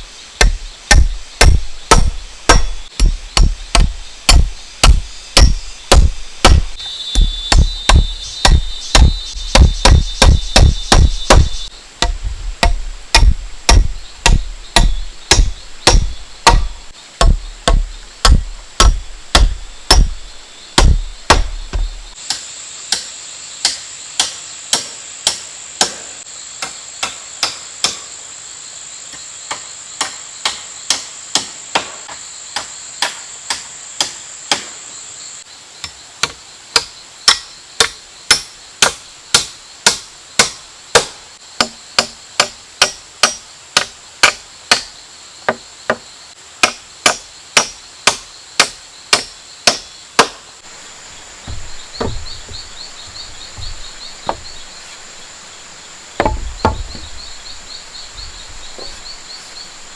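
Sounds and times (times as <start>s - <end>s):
high-pitched insect buzz: 0.0s - 24.1s, 50.6s - 59.9s
hand tool striking wood: 0.4s - 23.0s, 36.2s - 44.9s, 46.6s - 50.8s, 51.4s - 55.3s, 56.2s - 59.6s.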